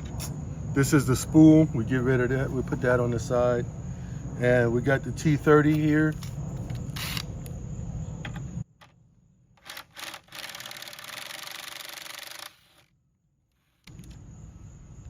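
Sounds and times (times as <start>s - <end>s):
screwdriver ratchet clicking: 9.6s - 12.9s.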